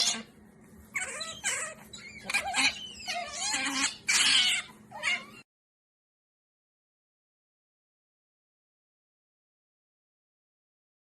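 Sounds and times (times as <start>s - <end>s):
otters squeaking and chirping: 0.0s - 5.4s.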